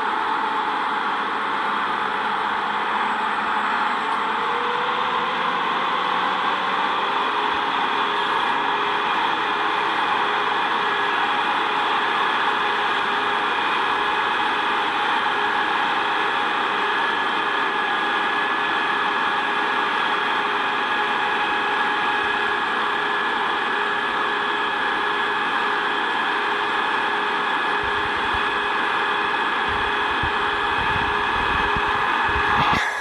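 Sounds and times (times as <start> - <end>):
combine harvester drone: 0.0 - 33.0
steady whine: 27.5 - 33.0.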